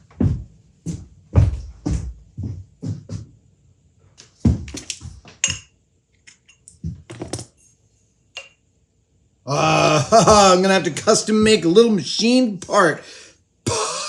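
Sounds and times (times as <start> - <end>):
tools knocking and clinking: 4.7 - 7.6, 8.4 - 8.6.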